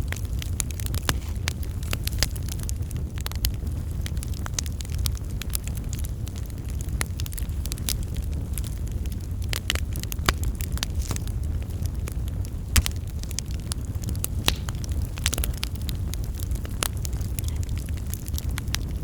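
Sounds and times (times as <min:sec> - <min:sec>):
wood fire crackling: 0:00.0 - 0:19.0
sharp pops: 0:12.8 - 0:13.5, 0:14.4 - 0:15.4.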